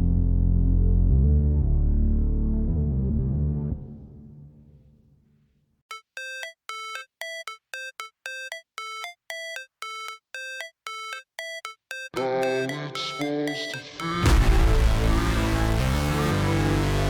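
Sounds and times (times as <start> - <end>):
background music: 12.0 - 17.0.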